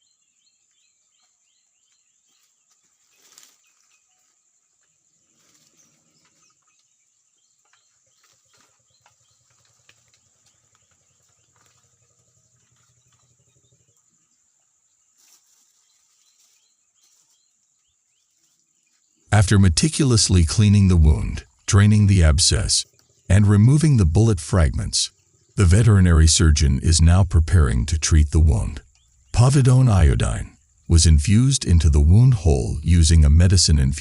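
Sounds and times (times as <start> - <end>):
faint bird chirps: 0.0 - 19.4
faint low hum: 19.3 - 34.0.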